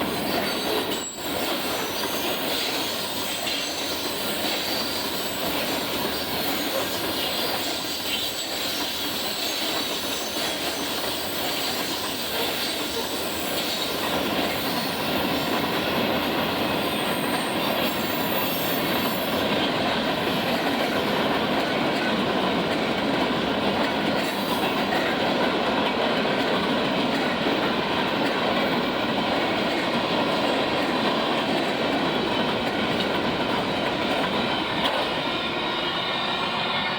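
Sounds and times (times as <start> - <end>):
train wheels on rails: 0.0 - 36.9
high wheel squeal: 0.2 - 13.9, 16.8 - 19.2.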